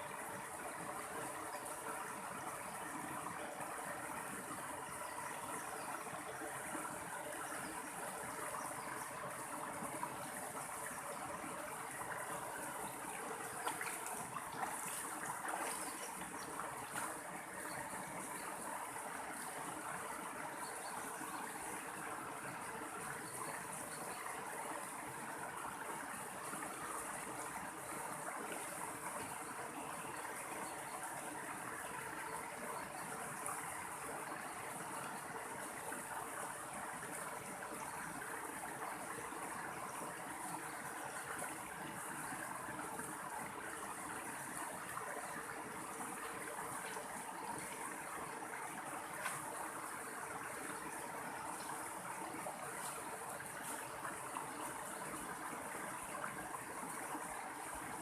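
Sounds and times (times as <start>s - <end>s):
stream running over rocks: 0.0s - 58.0s
water splashes: 0.0s - 58.0s.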